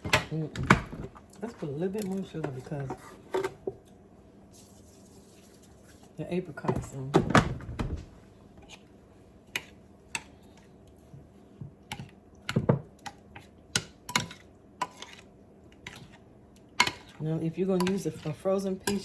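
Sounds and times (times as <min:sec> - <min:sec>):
kitchen utensils clicking and tapping: 0:16.8 - 0:19.0.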